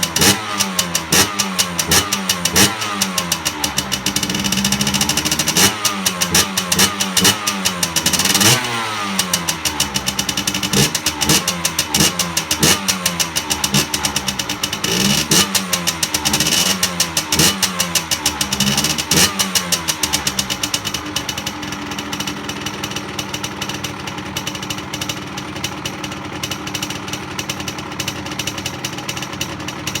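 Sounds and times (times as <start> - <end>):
engine idling: 0.0 - 30.0
two-stroke engine revving: 0.0 - 30.0.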